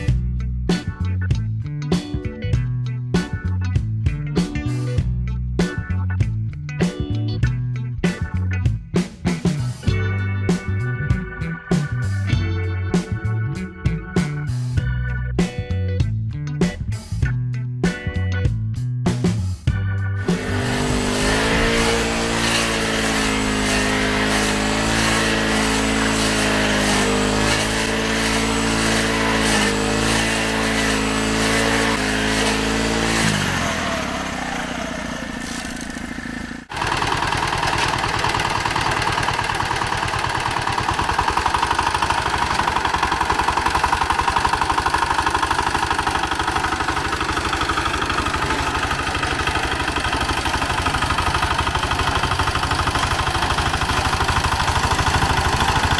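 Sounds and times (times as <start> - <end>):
small engine running: 20.2 - 55.9.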